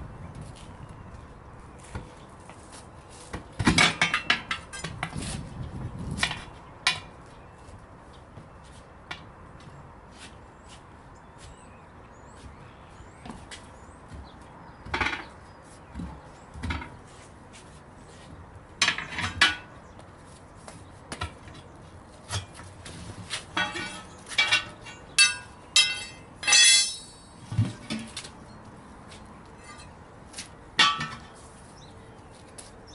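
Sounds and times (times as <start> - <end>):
metal tools clanking on metal: 18.8 - 19.7, 23.5 - 28.2, 29.6 - 30.0, 30.8 - 31.4.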